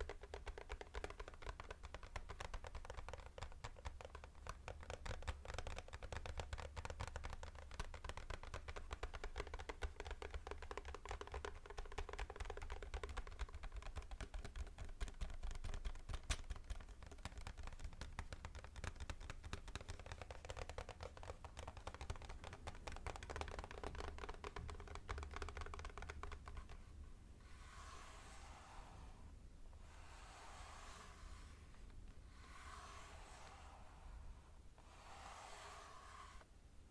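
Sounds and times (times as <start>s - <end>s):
soft rustle: 13.2s - 36.9s
fast keyboard typing: 22.0s - 26.2s.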